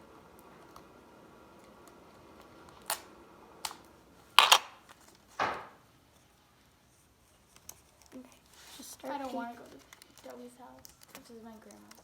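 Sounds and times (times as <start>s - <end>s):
sticky tape pulled and torn: 2.8s - 3.8s, 4.4s - 5.2s.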